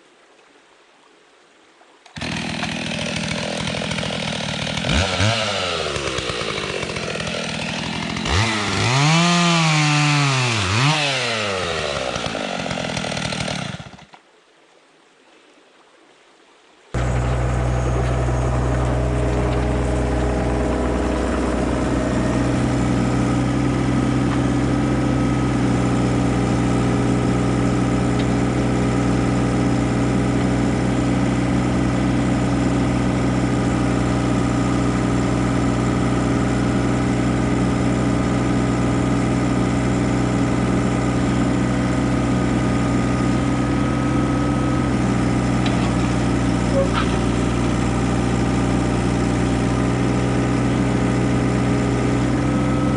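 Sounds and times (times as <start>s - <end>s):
engine idling: 17.0s - 52.9s.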